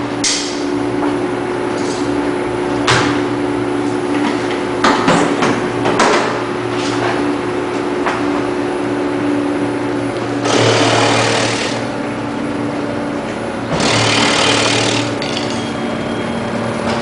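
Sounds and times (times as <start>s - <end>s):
vegetable cutting machine humming: 9.8s - 16.9s.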